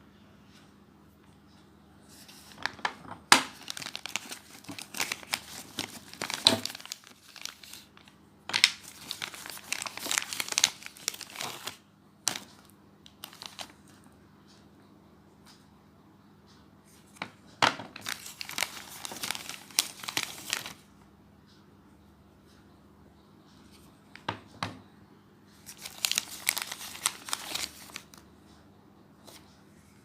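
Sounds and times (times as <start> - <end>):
packaging crinkling and tearing: 2.4 - 13.8, 17.9 - 20.9, 25.6 - 28.2.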